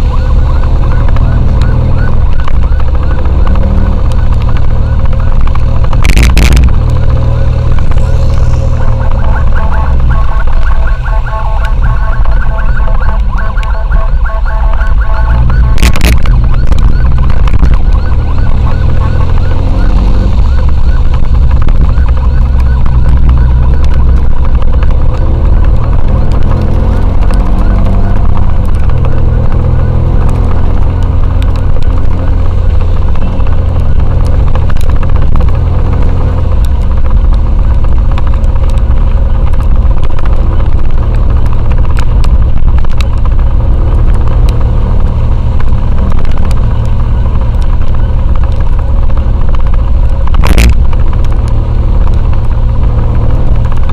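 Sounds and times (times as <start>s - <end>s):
motorcycle engine running: 0.0s - 53.9s.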